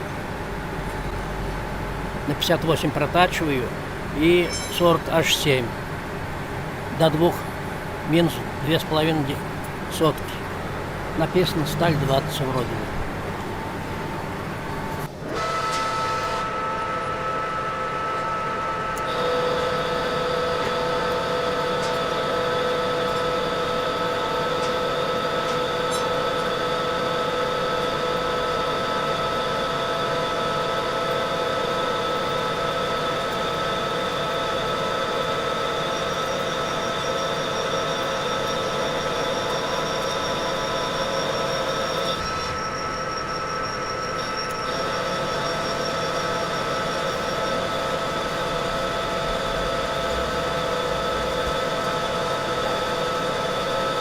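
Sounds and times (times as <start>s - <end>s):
higher whine: 0.0s - 6.6s, 8.1s - 15.3s
gearbox whine: 0.0s - 54.0s
metal lathe running: 0.4s - 54.0s.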